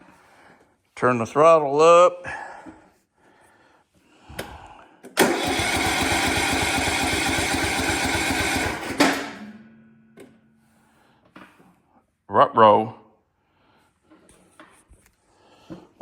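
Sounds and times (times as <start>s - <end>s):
electric starter cranking engine: 5.1s - 9.5s.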